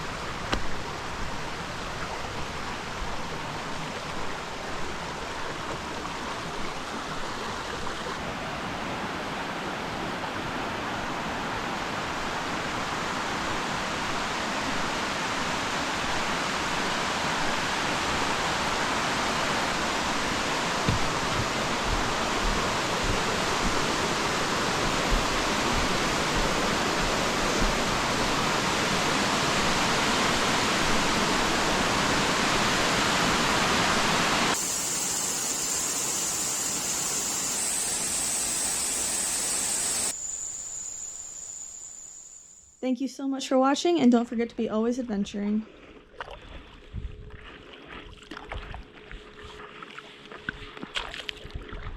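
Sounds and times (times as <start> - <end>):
waterfall rushing: 10.6 - 40.2
soft low thumps: 20.8 - 24.0.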